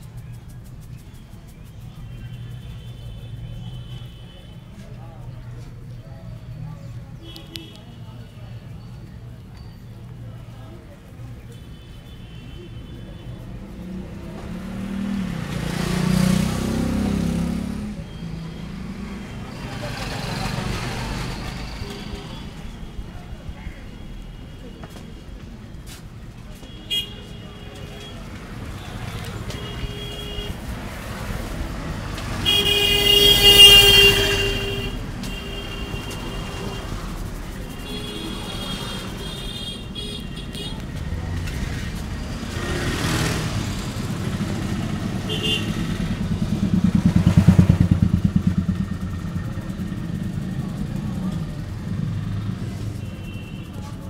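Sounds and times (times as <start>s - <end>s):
road traffic noise: 0.0s - 54.0s
vehicle engine passing by: 13.5s - 23.2s, 28.1s - 39.3s, 40.4s - 53.0s
vehicle horn honking: 26.6s - 30.6s, 32.4s - 37.0s, 37.7s - 40.9s, 45.3s - 46.0s.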